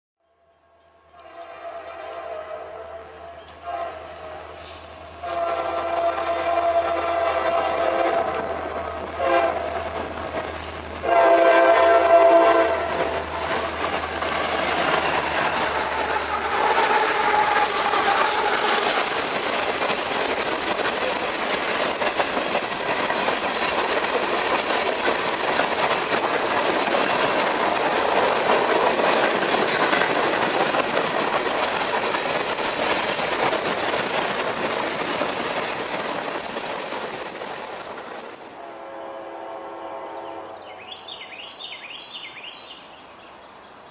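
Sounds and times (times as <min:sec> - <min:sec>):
locomotive air horn blasts: 0:01.0 - 0:09.9, 0:11.0 - 0:13.7, 0:15.8 - 0:19.0, 0:38.6 - 0:40.7
train wheels clattering over rails: 0:04.6 - 0:38.6.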